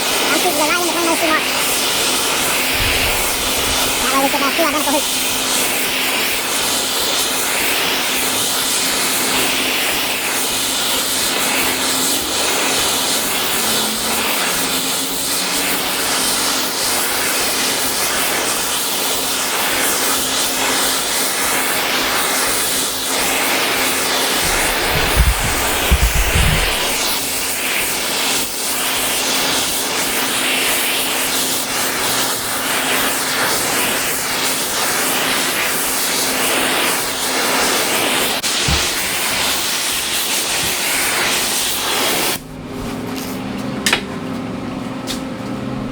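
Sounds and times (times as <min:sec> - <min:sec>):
gas burner roaring: 0:00.0 - 0:45.9
low knocks: 0:24.4 - 0:27.0.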